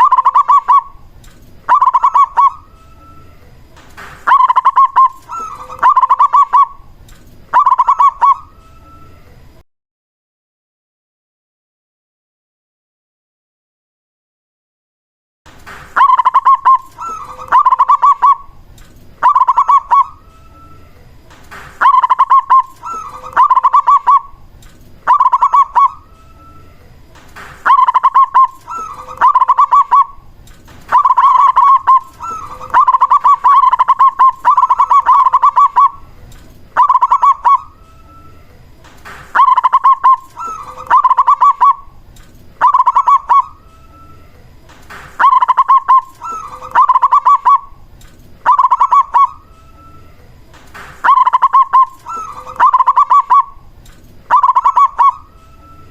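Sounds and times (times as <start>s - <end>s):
dove cooing: 0.0s - 1.0s, 1.7s - 2.7s, 4.2s - 6.9s, 7.5s - 8.6s, 16.0s - 18.6s, 19.2s - 20.7s, 21.8s - 24.4s, 25.0s - 26.1s, 27.6s - 30.3s, 30.9s - 36.2s, 36.8s - 38.2s, 39.3s - 42.0s, 42.6s - 44.2s, 45.2s - 47.8s, 48.4s - 50.0s, 51.0s - 53.7s, 54.3s - 55.9s.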